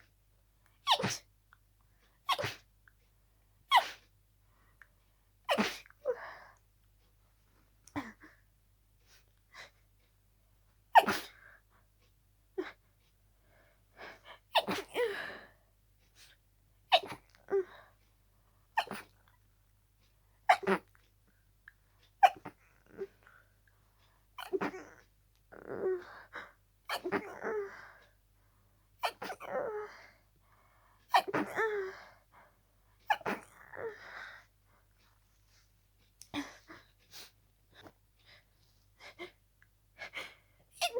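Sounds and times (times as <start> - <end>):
person sneezing: 0.9 - 1.2, 2.3 - 2.6.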